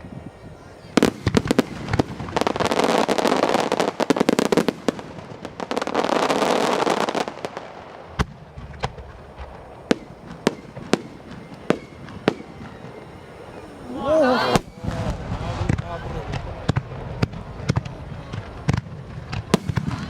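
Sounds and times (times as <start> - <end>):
fireworks crackling and bursting: 0.0 - 20.0.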